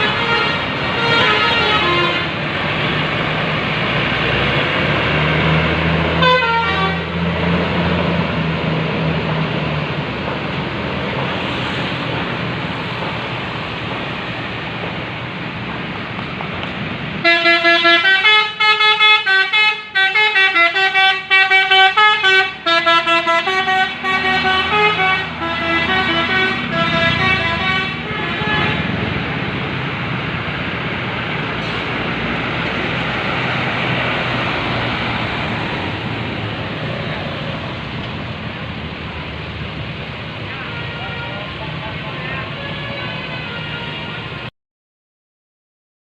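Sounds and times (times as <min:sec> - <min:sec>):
bus musical horn tune: 0:00.0 - 0:02.4, 0:06.1 - 0:07.2, 0:17.2 - 0:29.0, 0:42.5 - 0:44.5
road and engine noise: 0:00.0 - 0:44.5.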